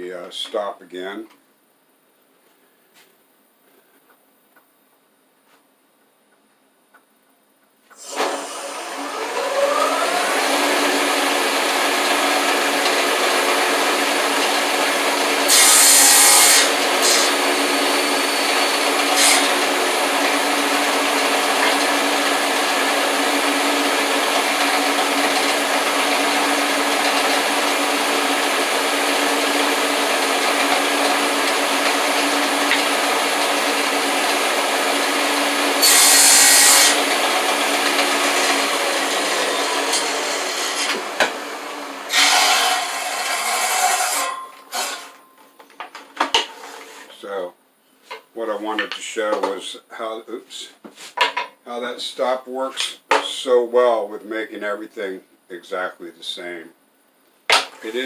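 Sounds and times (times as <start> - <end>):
power saw motor whining: 8.0 - 45.2
saw blade cutting wood: 8.0 - 45.2.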